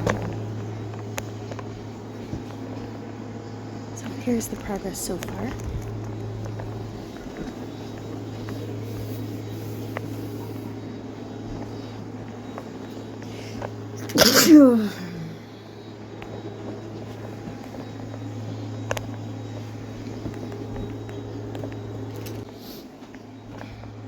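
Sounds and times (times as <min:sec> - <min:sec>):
low hum: 0:00.0 - 0:24.0
person sneezing: 0:14.0 - 0:15.3.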